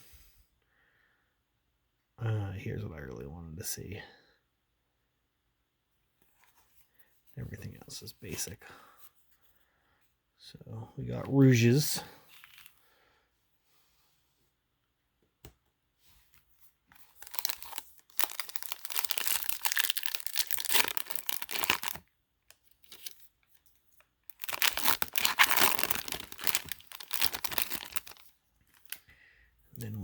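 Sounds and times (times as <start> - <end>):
wrapper tearing and crinkling: 17.0 - 22.0, 22.8 - 23.2, 24.2 - 29.0.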